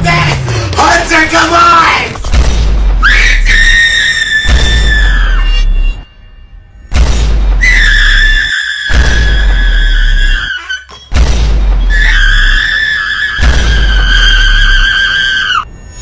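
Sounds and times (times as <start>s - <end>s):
distorted high-pitched scream: 3.0s - 6.2s, 7.6s - 11.1s, 11.8s - 16.0s.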